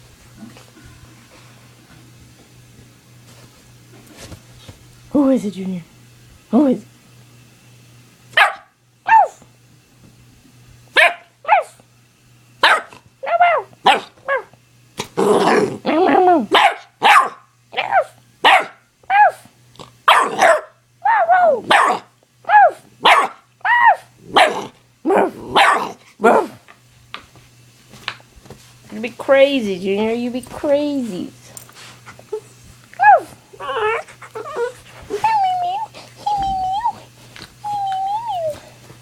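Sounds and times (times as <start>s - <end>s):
puppy barking in high yaps: 8.3s - 9.4s, 11.0s - 11.8s, 12.6s - 14.6s, 16.5s - 19.4s, 20.1s - 24.7s, 25.6s - 26.6s, 33.0s - 34.0s.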